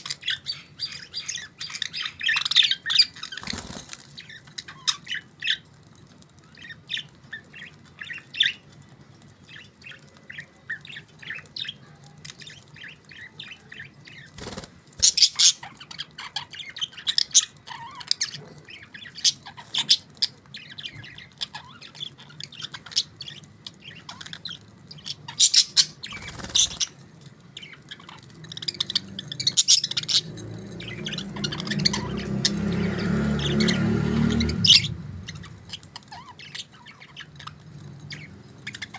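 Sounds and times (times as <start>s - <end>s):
budgerigars chirping and squawking: 0.0s - 38.9s
low rumbling noise: 30.2s - 35.9s.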